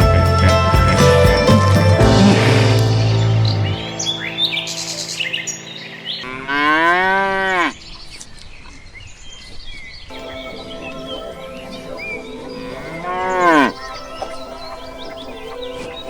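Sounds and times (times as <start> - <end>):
birds chirping: 1.4 - 16.0
farm animal call: 6.2 - 7.8, 10.3 - 14.4.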